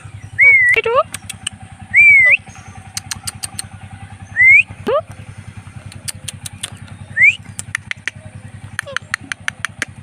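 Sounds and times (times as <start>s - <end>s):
low mechanical rumble: 0.0s - 10.0s
parrot whistled calls: 0.3s - 0.9s, 1.9s - 3.6s, 4.3s - 4.8s.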